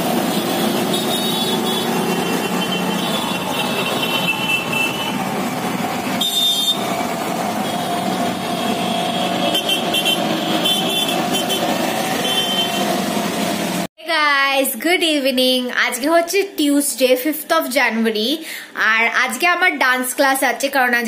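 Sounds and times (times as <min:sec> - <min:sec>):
motor vehicles running: 0:00.0 - 0:13.9
short high horn toots: 0:06.2 - 0:06.9, 0:07.6 - 0:13.0.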